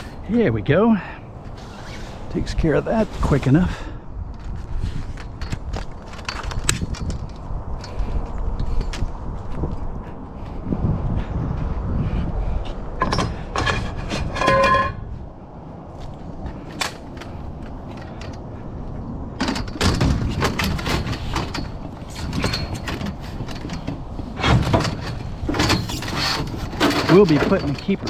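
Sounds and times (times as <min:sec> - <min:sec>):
scrap metal clanking: 0:13.0 - 0:15.2, 0:19.4 - 0:28.0
short metallic ring: 0:14.3 - 0:15.1.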